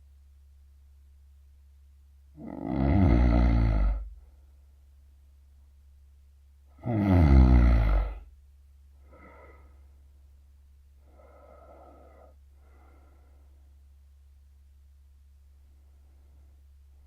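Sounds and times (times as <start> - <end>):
steady low hum: 0.0 - 17.0
man snoring: 2.4 - 4.2, 6.8 - 8.2
soft breaths: 8.9 - 14.4, 15.4 - 17.0.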